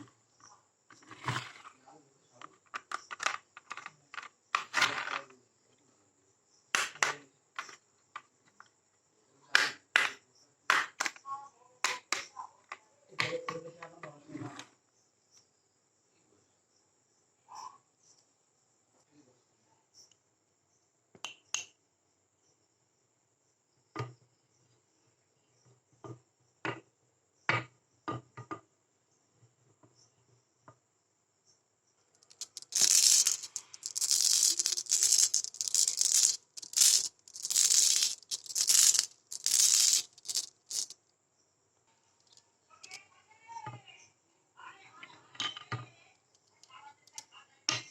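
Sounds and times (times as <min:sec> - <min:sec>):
marbles rolling and rattling: 0:02.8 - 0:05.3, 0:32.2 - 0:41.0, 0:42.2 - 0:43.0, 0:46.4 - 0:47.2
marbles clicking: 0:32.2 - 0:41.0, 0:42.2 - 0:43.0, 0:46.4 - 0:47.2.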